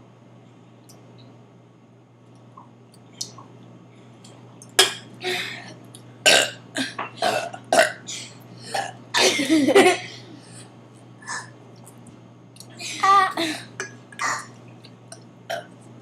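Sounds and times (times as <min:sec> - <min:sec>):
person burping: 0:06.2 - 0:08.1, 0:08.7 - 0:09.5, 0:13.3 - 0:14.5.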